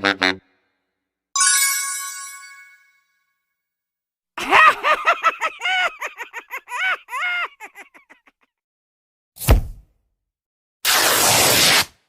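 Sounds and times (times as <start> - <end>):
person giggling: 4.4 - 8.4.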